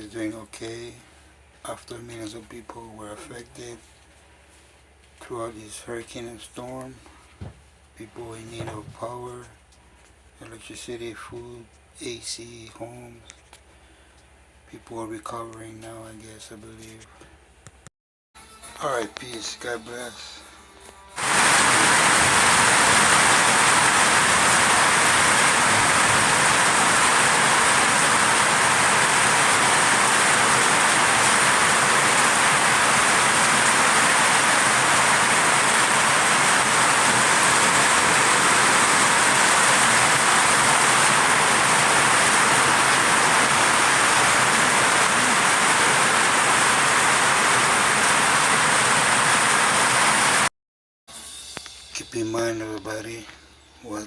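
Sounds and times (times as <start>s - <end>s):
heavy rain pouring: 21.2s - 50.5s.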